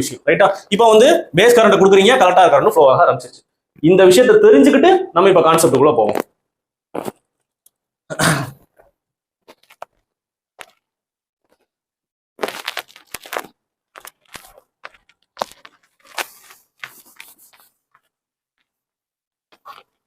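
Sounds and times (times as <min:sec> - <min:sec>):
rustling crackling handling noise: 0:12.4 - 0:18.7.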